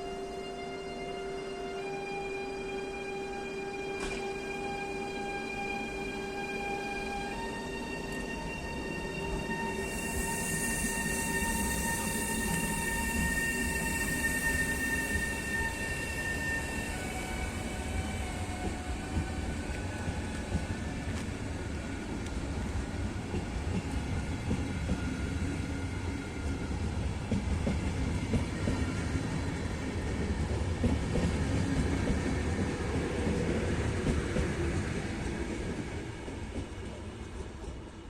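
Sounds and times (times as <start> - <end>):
locomotive whine: 0.0 - 38.0
train wheels rumbling: 7.6 - 38.0.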